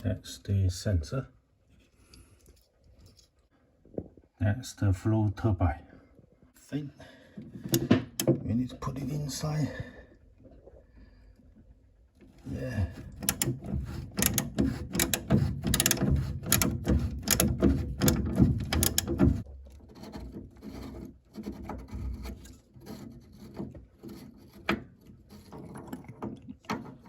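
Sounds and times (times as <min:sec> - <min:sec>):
small metal parts clicking: 0:13.0 - 0:19.4.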